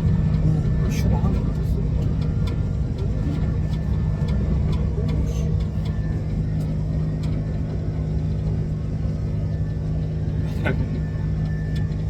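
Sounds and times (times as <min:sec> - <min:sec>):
jet cabin engine drone: 0:00.0 - 0:12.0.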